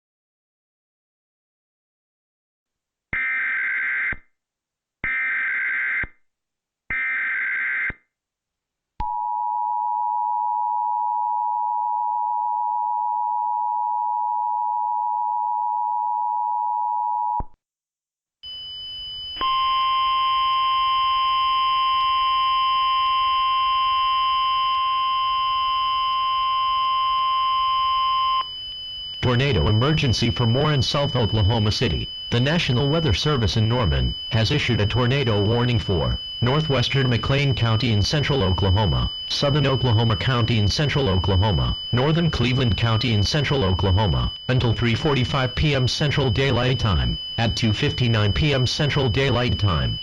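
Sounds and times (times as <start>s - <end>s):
two-tone attention signal: 29.2s - 50.0s.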